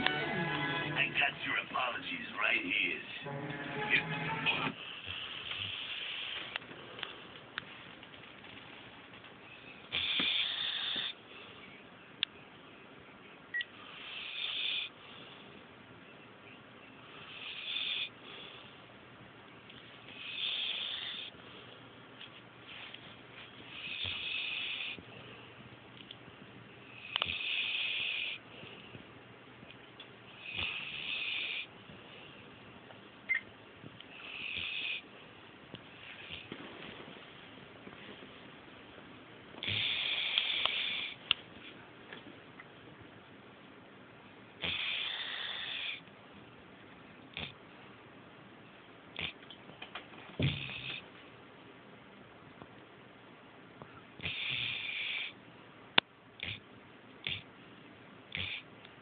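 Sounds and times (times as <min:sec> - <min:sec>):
dog snoring: 0:03.7 - 0:06.5, 0:09.9 - 0:11.2, 0:13.8 - 0:15.0, 0:17.2 - 0:18.2, 0:20.1 - 0:21.4, 0:23.7 - 0:25.0, 0:26.9 - 0:28.4, 0:30.3 - 0:31.7, 0:34.1 - 0:35.1, 0:36.0 - 0:36.6, 0:39.6 - 0:41.2, 0:44.6 - 0:46.0, 0:47.3 - 0:47.6, 0:49.2 - 0:49.4, 0:50.4 - 0:51.0, 0:54.2 - 0:55.4, 0:56.4 - 0:56.6, 0:57.2 - 0:57.5, 0:58.3 - 0:58.7.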